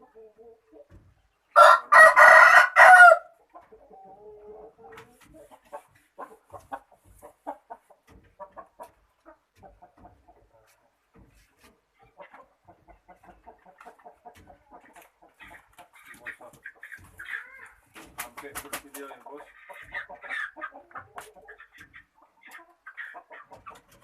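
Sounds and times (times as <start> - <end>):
chicken clucking and squawking: 0.0 - 24.0.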